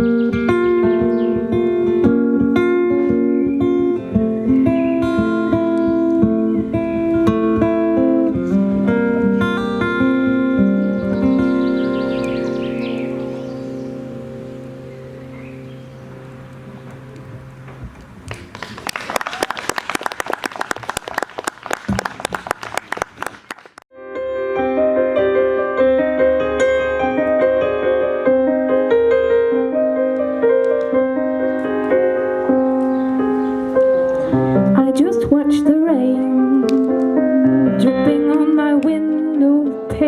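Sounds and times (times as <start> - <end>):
piano playing: 0.0 - 18.0, 23.9 - 40.0
audience applauding: 18.3 - 23.8.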